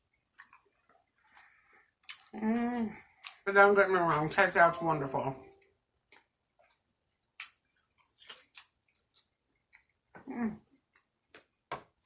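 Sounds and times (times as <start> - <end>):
person chewing with wet mouth smacks: 2.0 - 2.4, 6.2 - 10.0.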